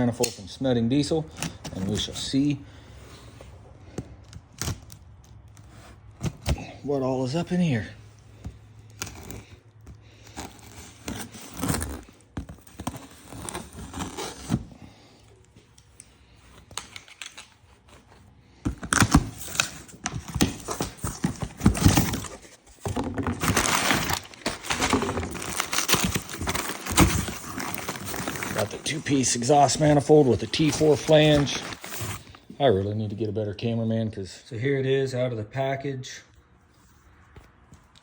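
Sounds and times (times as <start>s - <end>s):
packing tearing and crinkling: 4.1s - 6.8s, 8.8s - 14.8s, 16.6s - 32.5s.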